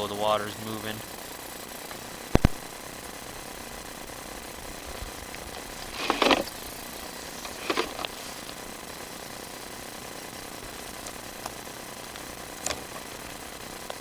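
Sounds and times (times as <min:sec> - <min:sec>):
steady faint hiss: 0:00.0 - 0:14.0
cable reel rattling clatter: 0:05.5 - 0:06.6, 0:07.4 - 0:08.3.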